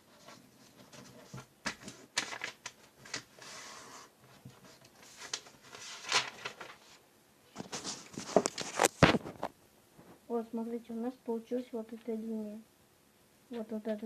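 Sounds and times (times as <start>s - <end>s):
paper rustling and crackling: 0.1s - 9.5s.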